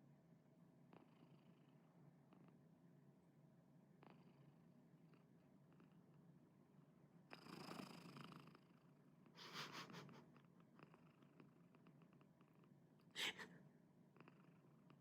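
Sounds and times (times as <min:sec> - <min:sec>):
cat purring quietly: 0:00.8 - 0:02.8, 0:07.3 - 0:13.4.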